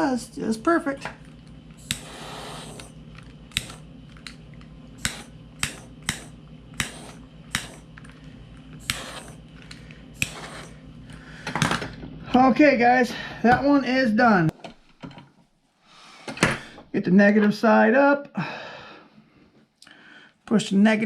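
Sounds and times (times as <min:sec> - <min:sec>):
low steady hum: 0:00.0 - 0:15.8.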